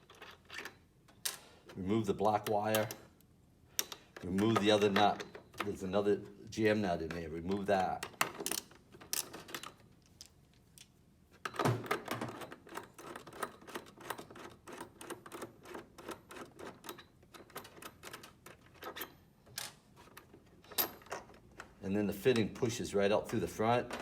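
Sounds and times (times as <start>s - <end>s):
hand tools clicking on metal: 2.3s - 3.1s.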